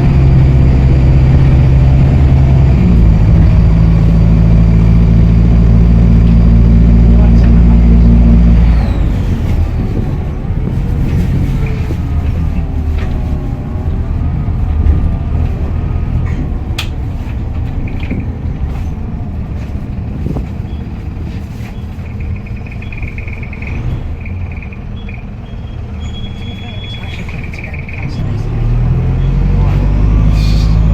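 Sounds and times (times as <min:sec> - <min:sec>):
wind rumble on microphone: 0:00.0 - 0:23.5
bus diesel engine running: 0:00.0 - 0:30.9
turbocharger whistling: 0:22.1 - 0:30.9.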